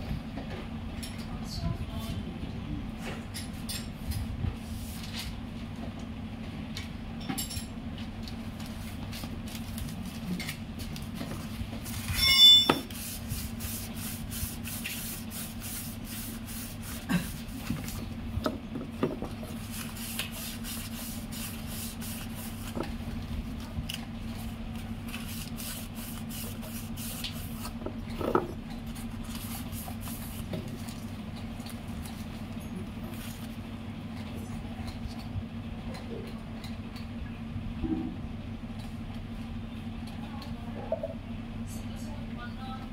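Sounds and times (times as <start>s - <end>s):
loud ringing metal clink: 12.1s - 12.8s.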